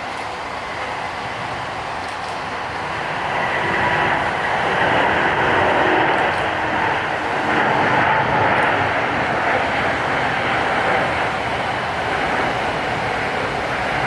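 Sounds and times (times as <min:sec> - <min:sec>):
jet engines roaring: 0:00.0 - 0:14.0.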